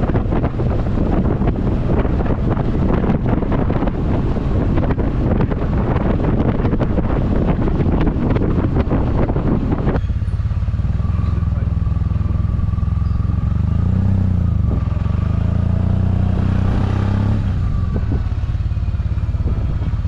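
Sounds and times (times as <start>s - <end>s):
motorcycle engine running: 0.0s - 20.0s
wind buffeting microphone: 0.0s - 20.0s.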